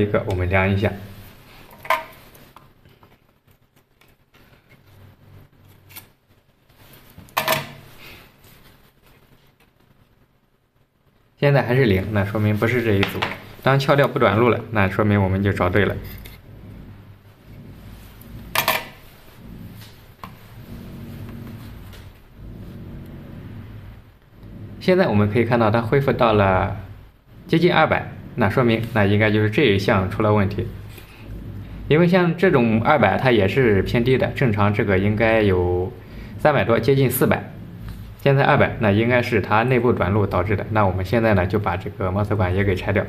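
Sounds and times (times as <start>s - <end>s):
low steady hum: 0.0s - 43.0s
tool scraping circuit board: 15.7s - 16.5s.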